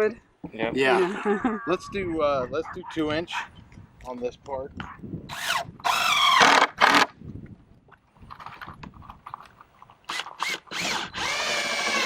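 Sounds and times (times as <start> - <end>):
power drill driving screw: 5.3 - 7.1, 10.1 - 12.0.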